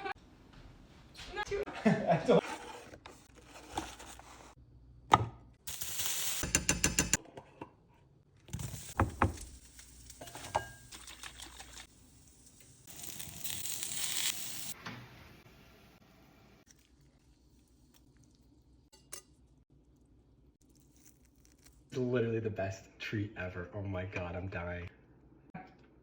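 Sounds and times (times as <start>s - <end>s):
sizzle-like hiss: 5.7s - 6.6s, 8.5s - 16.7s.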